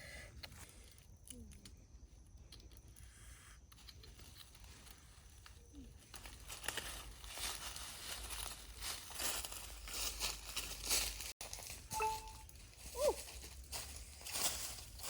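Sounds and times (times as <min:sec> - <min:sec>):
leaves and stems rustling: 0:04.1 - 0:15.0.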